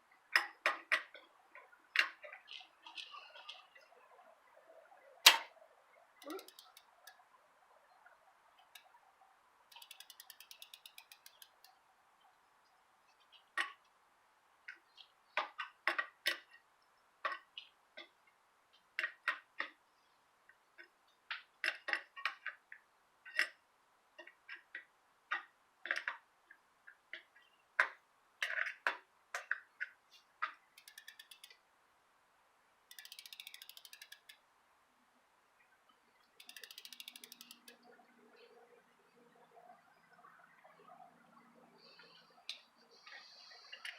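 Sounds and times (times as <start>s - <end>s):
bicycle hub ticking: 6.2s - 7.2s, 8.6s - 9.0s, 9.7s - 11.8s, 30.8s - 31.6s, 32.9s - 34.4s, 36.3s - 37.9s
sharp clicks: 6.2s - 7.2s, 9.7s - 11.8s, 30.8s - 31.6s, 32.9s - 34.4s, 36.4s - 37.8s.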